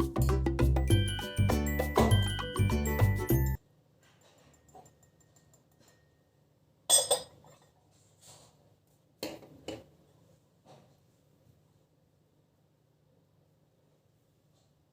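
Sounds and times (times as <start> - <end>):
dishes and cutlery clinking: 6.9 - 7.7.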